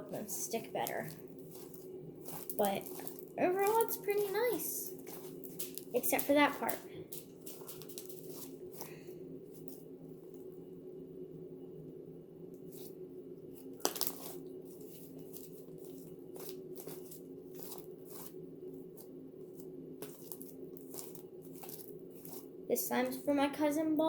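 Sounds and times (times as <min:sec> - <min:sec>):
steady low hum: 0:00.0 - 0:24.0
slime crackling and crunching: 0:00.1 - 0:09.8, 0:13.6 - 0:22.5.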